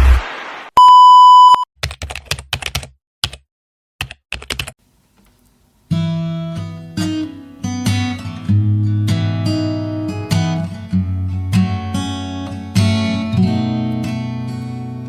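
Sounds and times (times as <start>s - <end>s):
electronic beep: 0.8s - 1.6s
acoustic guitar music: 5.9s - 15.0s.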